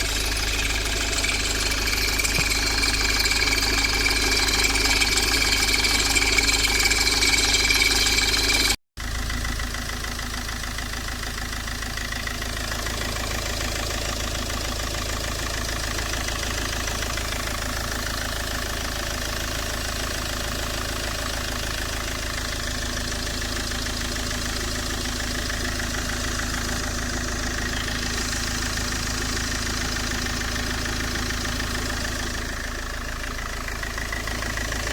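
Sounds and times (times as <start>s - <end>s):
high-pitched belt squeal: 0.0s - 8.8s
diesel engine idling: 0.0s - 34.9s.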